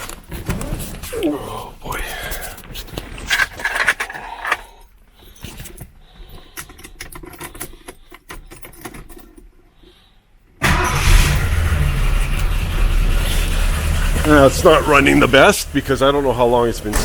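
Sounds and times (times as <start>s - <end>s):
keys jangling: 5.2s - 9.6s
car engine starting and running: 10.6s - 17.0s.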